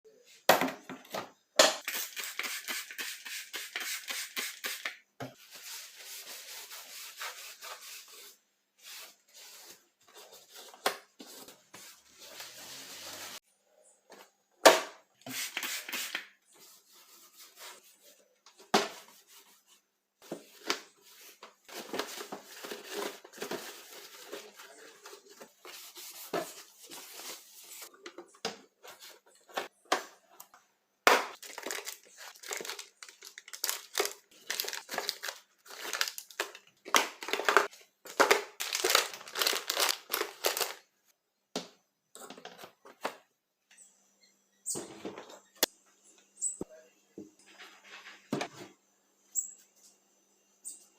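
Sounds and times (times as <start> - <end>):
plastic packaging crinkling: 31.4 - 40.9.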